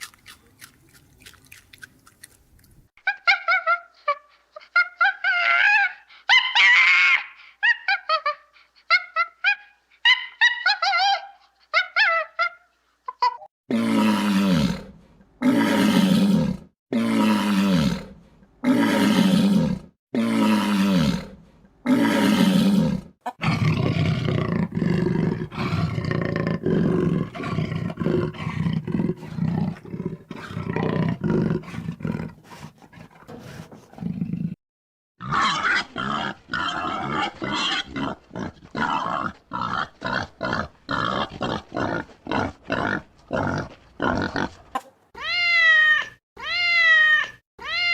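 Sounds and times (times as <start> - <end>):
animal roaring: 13.7 - 32.4.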